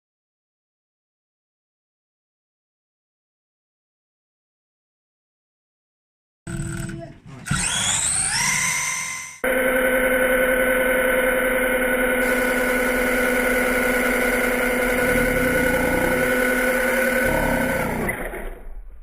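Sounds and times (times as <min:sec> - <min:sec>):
electric motor whining: 0:06.5 - 0:18.6.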